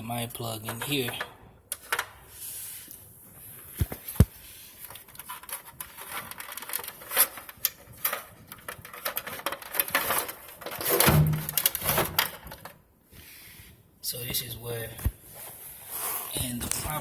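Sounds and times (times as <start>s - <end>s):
rapid clicks and rustling: 4.8s - 12.8s.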